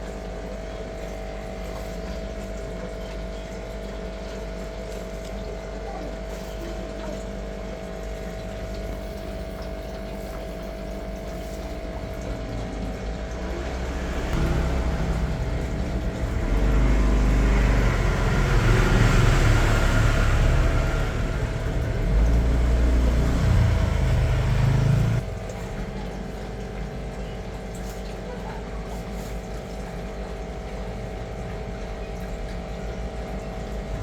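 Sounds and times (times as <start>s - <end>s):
motor humming: 5.6s - 25.3s.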